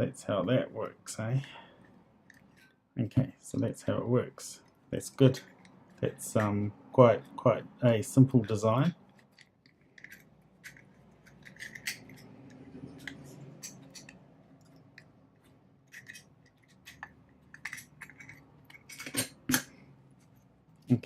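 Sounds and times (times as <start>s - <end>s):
padlock parts clicking and clinking: 8.4s - 15.2s, 15.8s - 19.8s.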